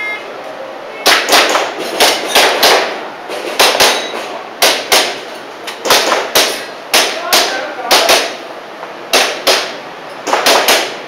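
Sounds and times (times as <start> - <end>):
airsoft pistol shots: 1.0 - 3.0, 3.6 - 5.2, 5.8 - 8.4, 9.1 - 11.0.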